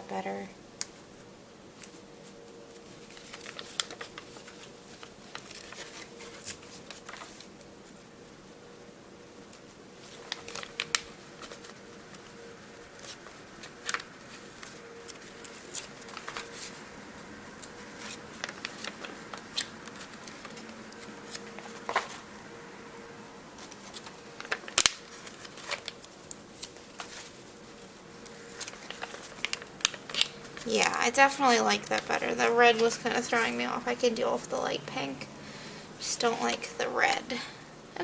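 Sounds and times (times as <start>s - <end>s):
faint steady hum: 0.0s - 38.0s
stickers peeling and tapping: 17.6s - 22.3s, 23.6s - 35.1s.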